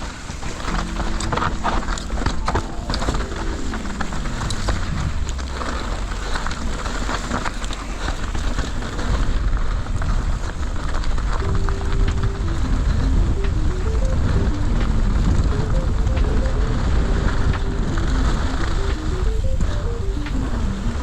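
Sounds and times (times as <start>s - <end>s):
bike tyres rattling on rough ground: 0.0s - 21.0s
wind buffeting microphone: 0.0s - 21.0s
falling tone: 0.7s - 6.8s.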